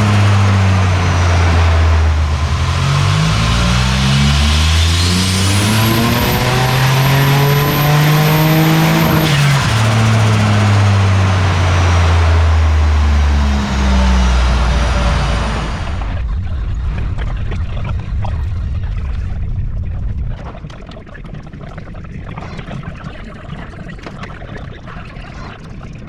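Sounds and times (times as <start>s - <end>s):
car engine revving: 0.0s - 18.9s
high turbo whine: 0.0s - 20.3s.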